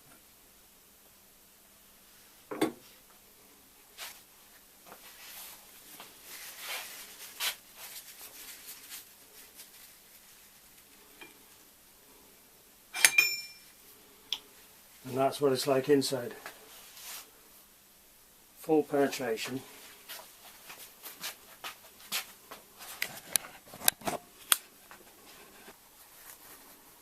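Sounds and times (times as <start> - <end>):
sharp metal clink: 12.9 - 13.7
crackling and scraping: 20.1 - 27.0.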